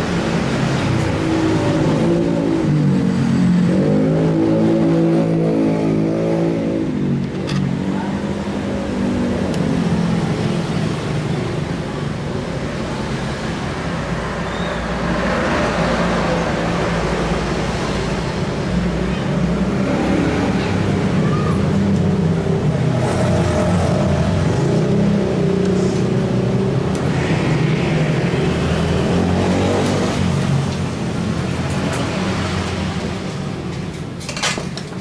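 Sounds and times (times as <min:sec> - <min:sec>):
engine revving and droning: 0:00.0 - 0:11.3, 0:13.3 - 0:33.3.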